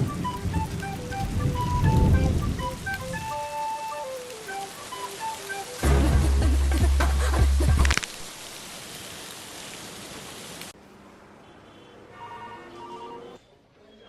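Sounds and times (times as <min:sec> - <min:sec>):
rain-like hiss: 0:00.0 - 0:11.5
loud music with deep bass: 0:05.8 - 0:07.9.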